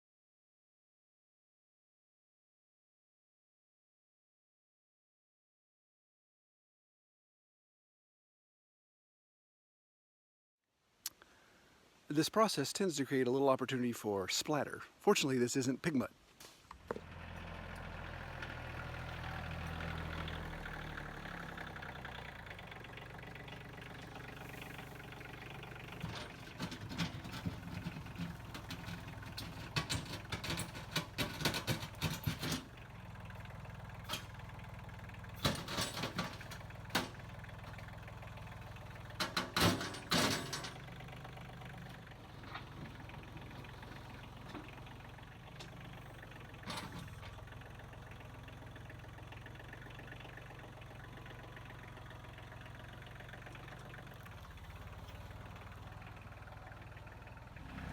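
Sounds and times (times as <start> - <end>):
machine engine idling: 16.8 - 57.8
wooden slabs clattering down: 25.9 - 32.7.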